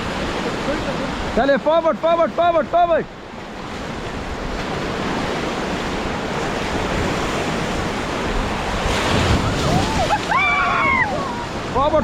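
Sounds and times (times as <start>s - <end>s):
whitewater rushing: 0.0s - 12.0s
wind buffeting microphone: 3.8s - 12.0s.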